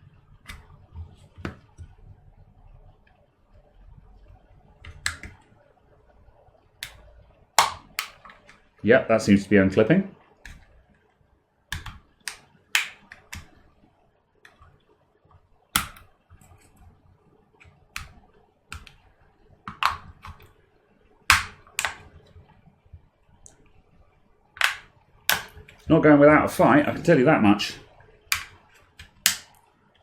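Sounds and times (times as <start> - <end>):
plastic clips clicking: 4.8 - 5.4, 7.6 - 8.6, 19.7 - 20.5, 21.3 - 22.1, 24.6 - 25.9, 28.3 - 29.6.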